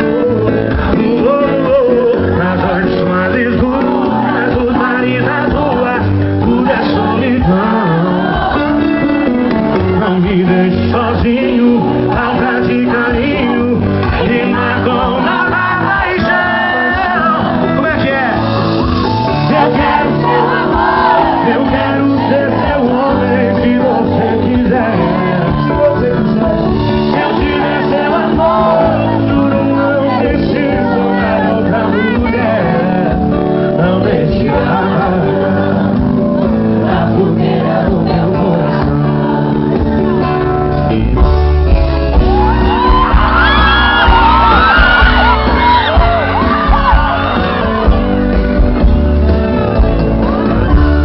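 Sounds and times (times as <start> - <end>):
group of voices singing: 0.0 - 41.1
music: 0.0 - 51.0
voices whooping and shouting: 42.2 - 48.0.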